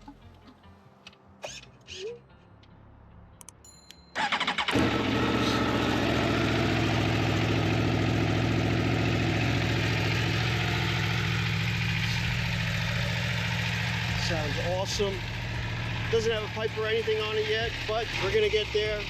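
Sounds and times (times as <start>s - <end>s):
motorcycle engine starting and idling: 4.2s - 19.0s.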